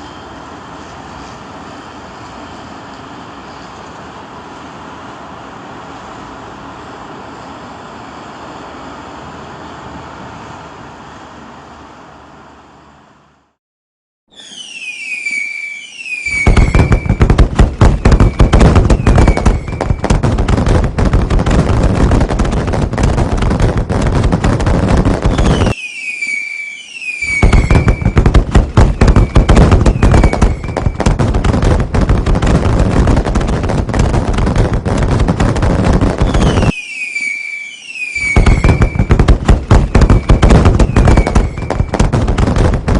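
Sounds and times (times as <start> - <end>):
firework whistles: 0.0 - 3.9, 14.3 - 34.0, 34.6 - 42.9
firework bangs and crackles: 14.4 - 42.9.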